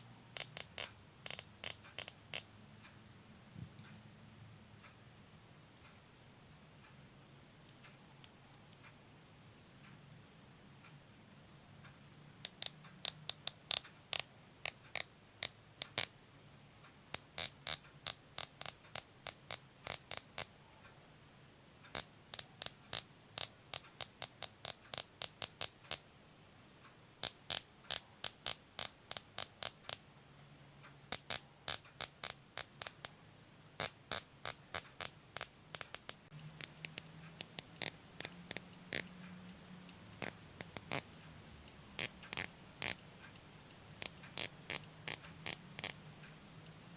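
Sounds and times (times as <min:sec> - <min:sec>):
zip tie ratchet clicking: 0:00.4 - 0:02.5, 0:12.4 - 0:16.2, 0:17.1 - 0:20.5, 0:21.9 - 0:26.0, 0:27.2 - 0:30.0, 0:31.1 - 0:33.2, 0:33.8 - 0:39.2, 0:40.1 - 0:41.2, 0:42.0 - 0:43.0, 0:44.0 - 0:46.0.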